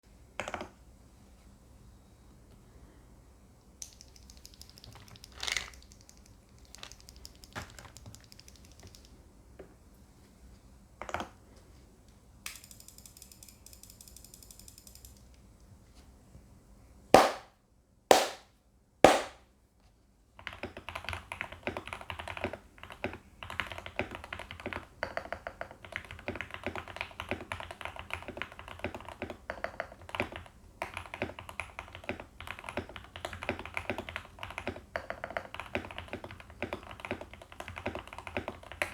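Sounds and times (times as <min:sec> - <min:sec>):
mechanical keyboard typing: 0:03.8 - 0:09.2, 0:12.5 - 0:15.3, 0:20.4 - 0:38.9
loud keyboard clacks: 0:20.4 - 0:38.9.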